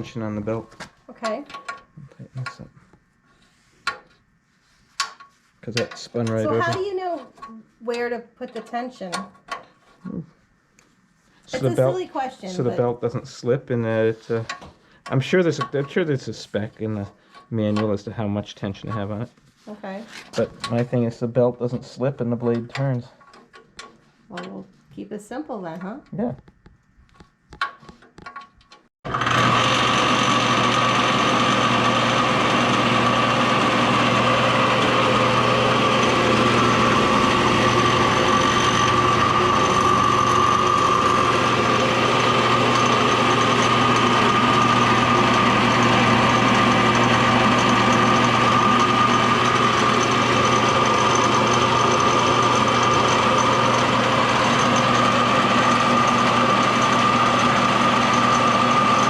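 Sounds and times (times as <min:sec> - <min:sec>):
table saw running: 0:29.1 - 0:59.0.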